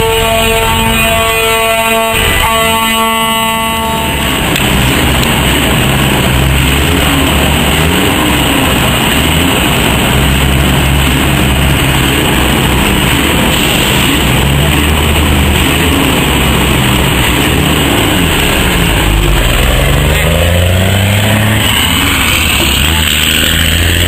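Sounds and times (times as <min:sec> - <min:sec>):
truck air horn blast: 0:00.0 - 0:04.5
diesel truck engine accelerating: 0:00.0 - 0:24.0.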